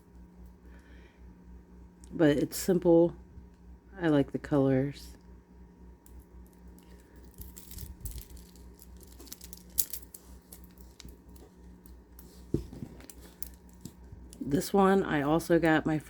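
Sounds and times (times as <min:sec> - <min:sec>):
faint steady hum: 0:00.0 - 0:16.0
plastic beads clicking and rustling: 0:06.1 - 0:14.4.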